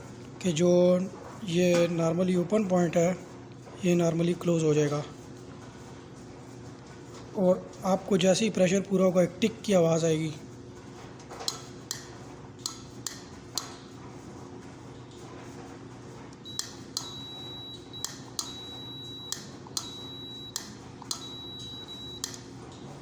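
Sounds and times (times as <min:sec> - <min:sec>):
multimeter high beep: 0:16.4 - 0:22.4.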